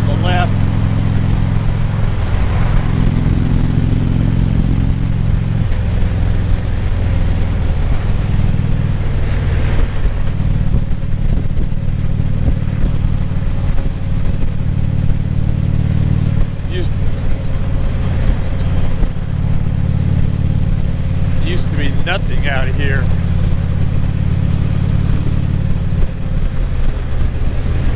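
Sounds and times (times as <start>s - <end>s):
motorcycle engine running: 0.0s - 27.9s
wind and road noise: 0.0s - 27.9s.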